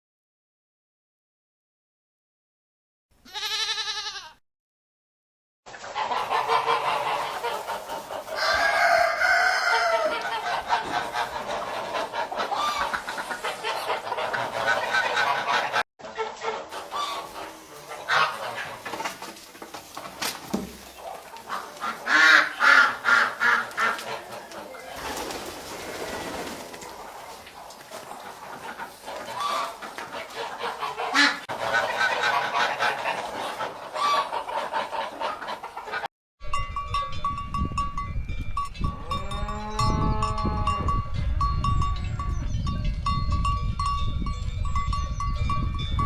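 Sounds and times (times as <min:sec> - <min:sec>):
chickens clucking: 0:05.7 - 0:36.1.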